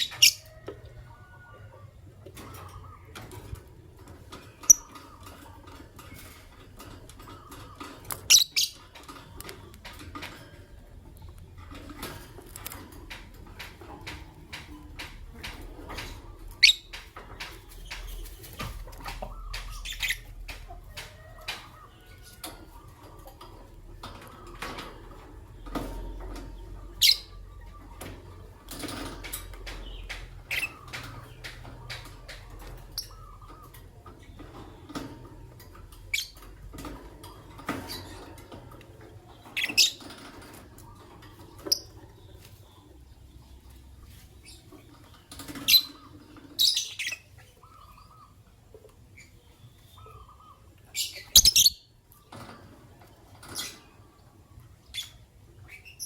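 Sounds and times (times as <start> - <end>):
lovebirds chirping: 4.3 - 9.8, 13.6 - 23.2, 29.6 - 35.0, 39.1 - 52.5.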